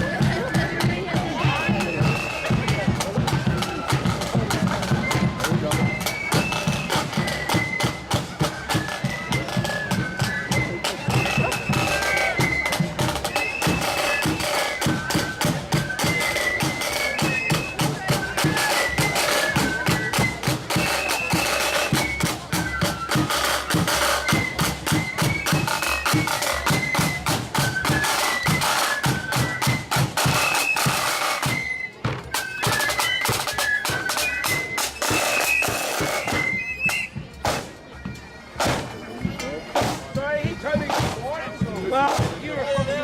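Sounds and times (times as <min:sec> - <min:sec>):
marching band melody: 0:00.0 - 0:43.0
rapid drumming: 0:39.8 - 0:43.0.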